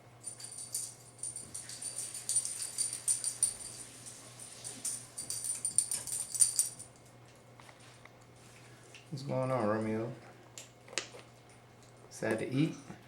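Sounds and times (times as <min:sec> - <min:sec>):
dog collar tags jingling: 0:00.2 - 0:07.1.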